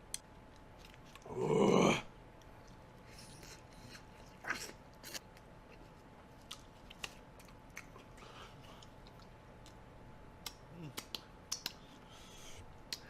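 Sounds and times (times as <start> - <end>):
person chewing food: 2.6 - 9.8.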